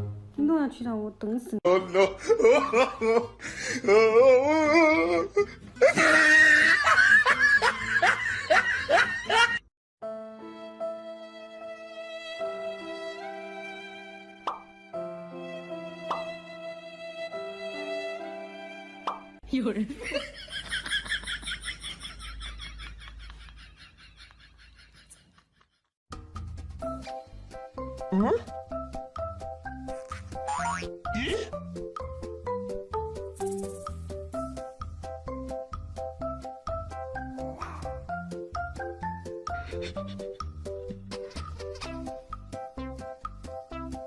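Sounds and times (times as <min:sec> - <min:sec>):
music: 0:00.0 - 0:01.1, 0:02.2 - 0:19.8, 0:26.1 - 0:44.0
person laughing hard: 0:01.7 - 0:09.6, 0:31.2 - 0:31.5
soft music with long notes: 0:10.0 - 0:19.4.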